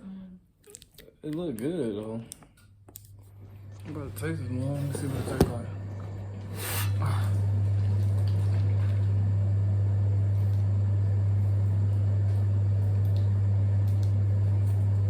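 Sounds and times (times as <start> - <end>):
loud low hum: 3.3 - 15.0.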